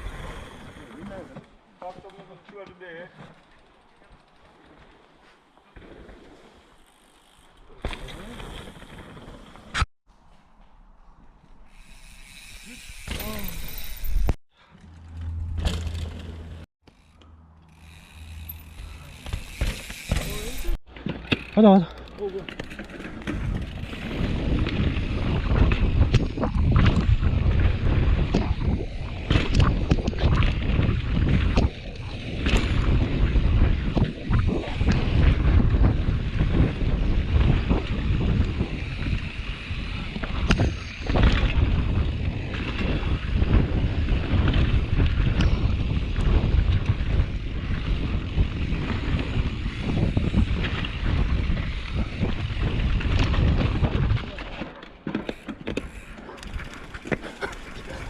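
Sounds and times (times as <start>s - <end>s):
mountain bike rolling over rough ground: 0.0s - 9.8s, 11.7s - 58.0s
bike rattling clicks and knocks: 11.7s - 58.0s
wind buffeting microphone: 23.3s - 54.5s.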